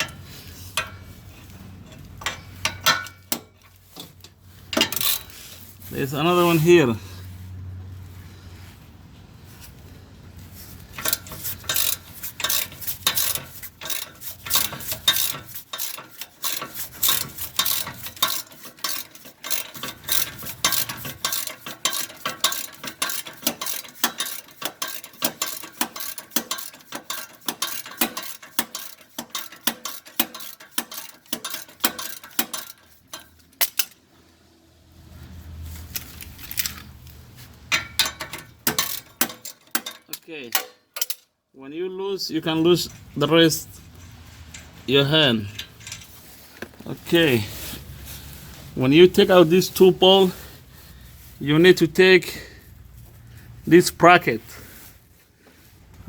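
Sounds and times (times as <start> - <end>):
ratchet wrench clicking: 1.8 - 5.7, 10.8 - 34.0, 35.9 - 41.3, 45.5 - 46.2
metal-on-metal clinks: 10.9 - 34.0, 37.6 - 41.3, 43.7 - 46.5.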